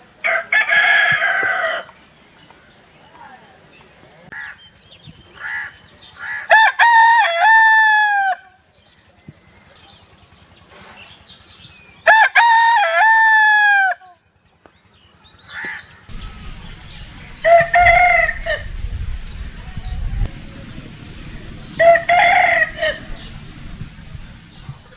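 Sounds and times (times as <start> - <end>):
low rumble: 16.1 - 24.9
rooster crowing: 16.1 - 24.9.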